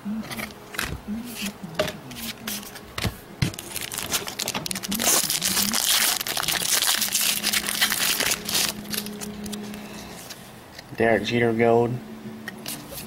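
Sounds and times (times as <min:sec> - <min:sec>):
foil wrapper tearing and crinkling: 0:03.4 - 0:09.6.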